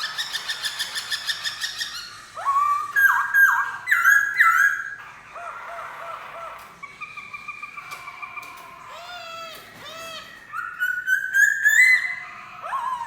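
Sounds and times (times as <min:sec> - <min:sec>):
bird singing trills and whistles: 0:00.0 - 0:05.0, 0:10.0 - 0:13.0.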